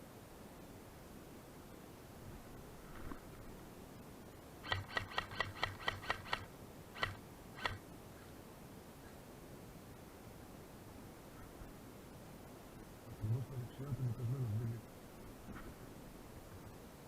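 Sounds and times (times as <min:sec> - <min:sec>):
airsoft gun shots: 0:04.6 - 0:07.8.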